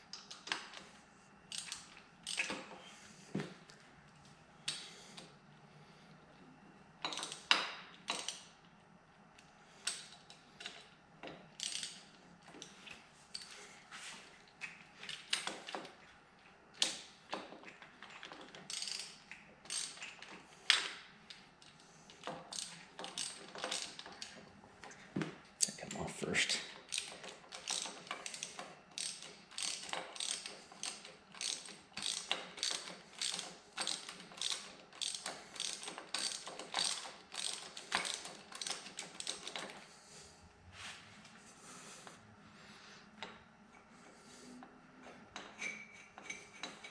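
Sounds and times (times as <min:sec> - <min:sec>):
ratchet wrench clicking: 0:01.5 - 0:02.6, 0:11.6 - 0:12.0, 0:18.7 - 0:20.2, 0:22.5 - 0:24.3, 0:26.9 - 0:39.7.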